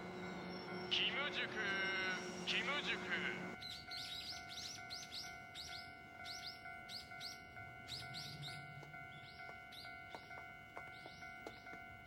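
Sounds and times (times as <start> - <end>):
small birds chirping: 3.6 - 12.0.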